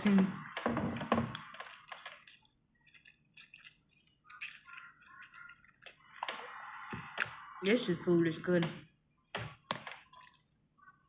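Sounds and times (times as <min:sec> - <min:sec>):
wet chewing and mouth sounds: 0:01.3 - 0:07.6, 0:09.8 - 0:11.0.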